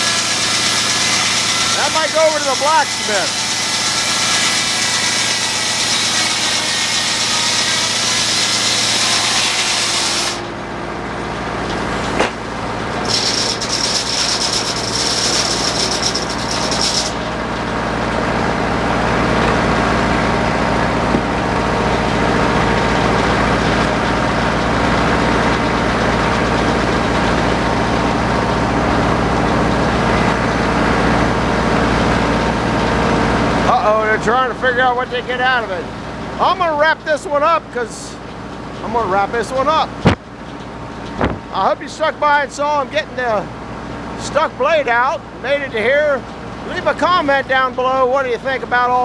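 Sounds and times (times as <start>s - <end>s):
saw blade cutting wood: 0.0s - 10.6s, 11.8s - 17.4s
sawmill engine running: 0.0s - 49.0s.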